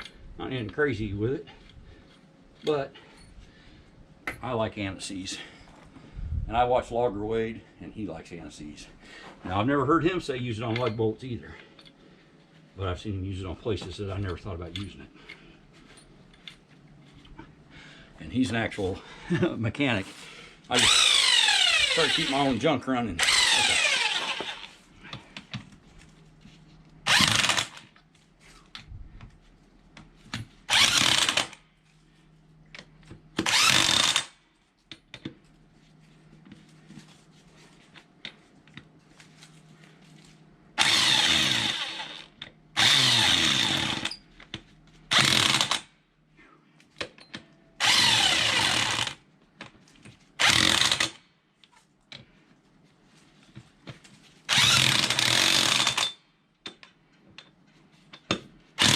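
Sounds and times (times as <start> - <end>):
cordless power tool bursts: 20.7 - 22.6, 23.2 - 24.8, 27.0 - 27.9, 30.7 - 31.6, 33.4 - 34.4, 40.8 - 44.2, 45.1 - 45.9, 47.8 - 49.2, 50.4 - 51.2, 54.5 - 56.2.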